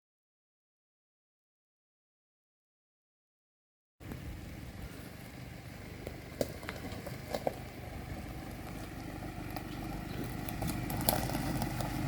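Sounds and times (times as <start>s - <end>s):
vehicle engine rumbling: 4.0s - 12.0s.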